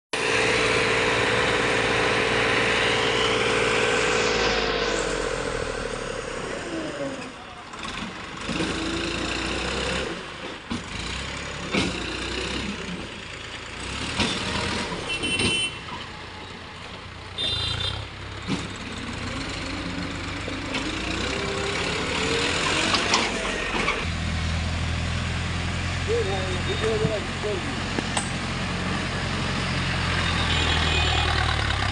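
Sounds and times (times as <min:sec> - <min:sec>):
diesel earth-moving machinery running: 0:00.2 - 0:31.9
knocks and clatters of work: 0:10.4 - 0:13.2, 0:18.3 - 0:19.1, 0:27.9 - 0:28.5.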